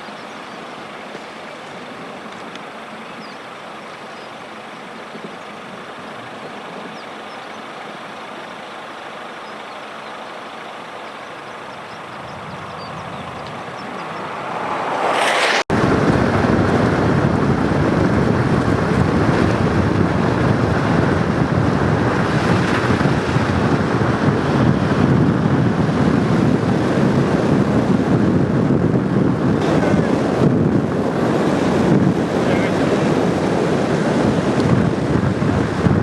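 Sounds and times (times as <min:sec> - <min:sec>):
wind buffeting microphone: 0:11.4 - 0:36.0.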